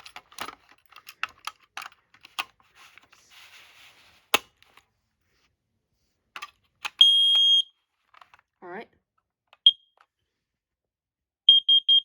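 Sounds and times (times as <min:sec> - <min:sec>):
soft rustle: 0:02.5 - 0:06.2.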